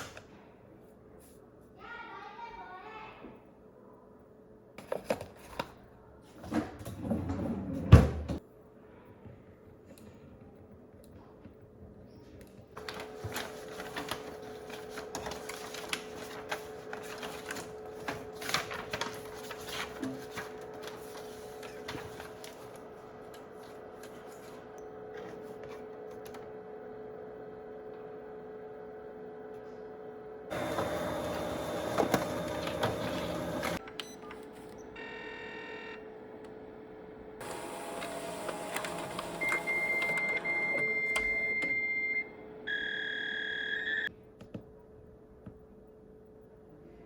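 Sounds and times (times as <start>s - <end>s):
printer humming and clicking: 12.8s - 42.2s
printer whirring: 12.8s - 44.1s.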